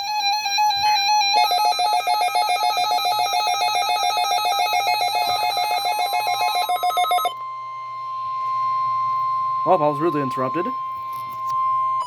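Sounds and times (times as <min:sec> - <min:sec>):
warbling electronic alarm: 0:00.0 - 0:12.0
steady electronic beep: 0:01.4 - 0:12.0.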